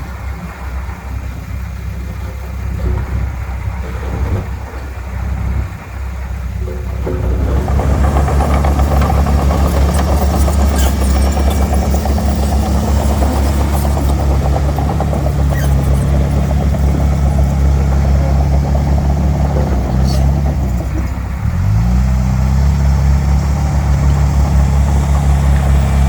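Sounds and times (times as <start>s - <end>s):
diesel engine running: 0.0s - 26.0s
metallic clicks and squeaks: 6.7s - 21.2s.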